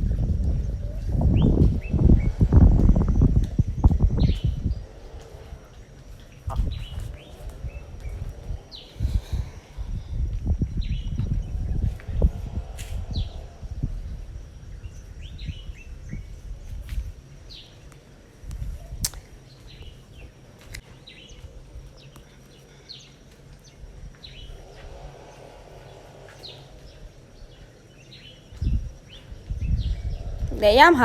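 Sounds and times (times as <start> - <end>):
low rumble: 0.0 - 17.2, 23.8 - 31.0
small birds chirping: 0.1 - 10.1, 10.7 - 31.0
faint sharp clicks: 17.9 - 19.3.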